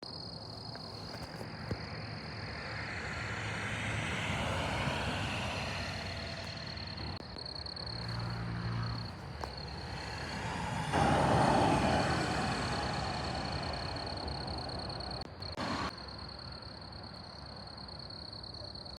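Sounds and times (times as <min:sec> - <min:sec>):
low engine hum: 0:00.8 - 0:15.9
vehicles driving past: 0:01.0 - 0:16.7.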